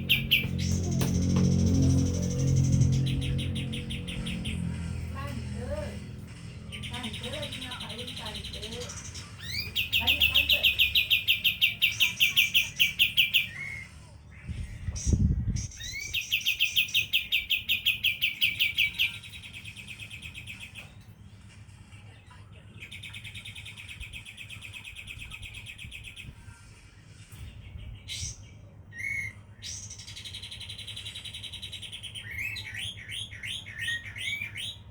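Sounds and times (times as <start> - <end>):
songbird rapid trill: 0.0 - 5.0.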